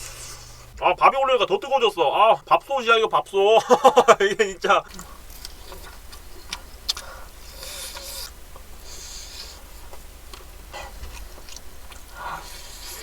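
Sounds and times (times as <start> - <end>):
soft rustles of food: 4.9 - 13.0.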